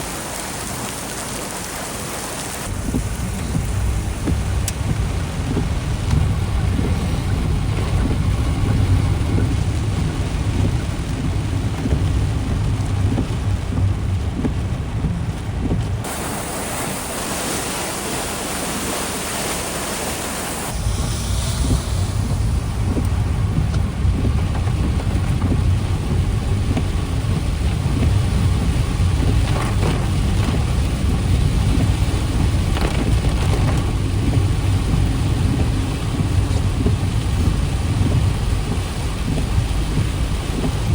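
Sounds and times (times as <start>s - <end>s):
rain: 0.0s - 40.9s
strong wind buffeting microphone: 2.7s - 19.4s, 20.6s - 40.9s
steady high hiss: 16.1s - 23.5s.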